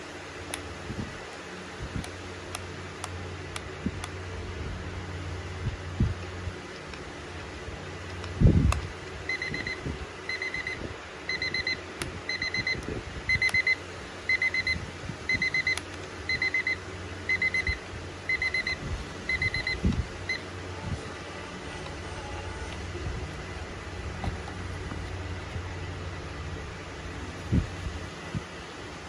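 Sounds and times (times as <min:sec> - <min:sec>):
alarm clock beeping: 0:09.3 - 0:20.4.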